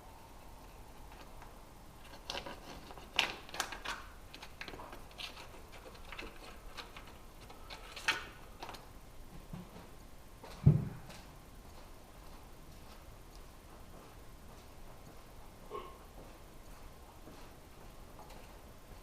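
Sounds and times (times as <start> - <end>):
dull thump: 10.6 - 11.1.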